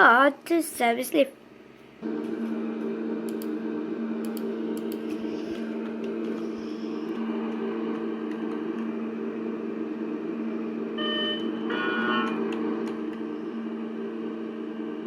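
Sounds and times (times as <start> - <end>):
low mechanical hum: 0.0 - 15.0
lift arrival chime: 10.9 - 13.0.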